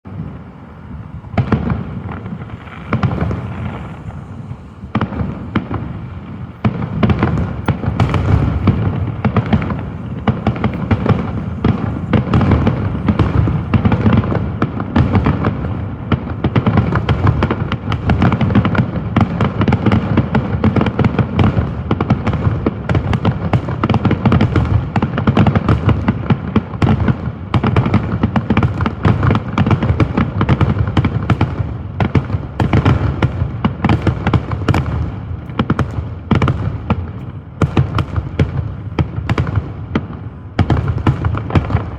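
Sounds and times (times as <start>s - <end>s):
low rumble: 0.1s - 14.9s
fireworks bangs and crackling pops: 0.1s - 41.9s.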